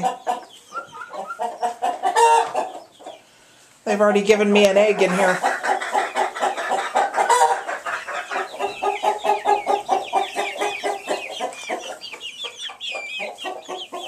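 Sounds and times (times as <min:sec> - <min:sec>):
chickens clucking: 0:00.0 - 0:14.0.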